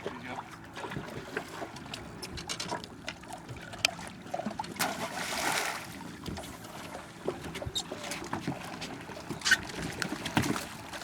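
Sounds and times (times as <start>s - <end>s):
water trickling and splashing: 0.0s - 11.0s
loud water splash: 4.8s - 5.9s.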